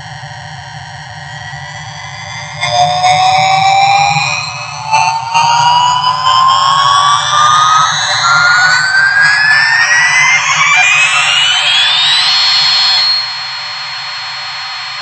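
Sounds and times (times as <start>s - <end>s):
toy airplane engine whine: 5.2s - 15.0s.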